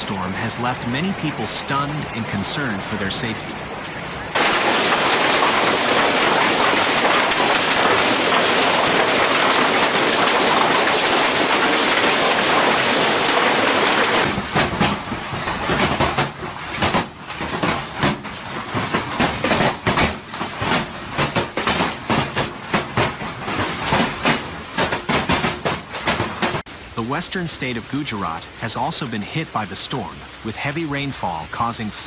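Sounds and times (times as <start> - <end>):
heavy rain pouring: 0.0 - 32.0
hailstones clattering on hard surfaces: 4.3 - 27.0.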